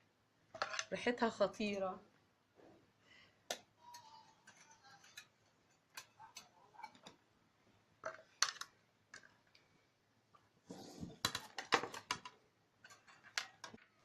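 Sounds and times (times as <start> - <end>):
utensils clinking against dishes: 3.9 - 7.0.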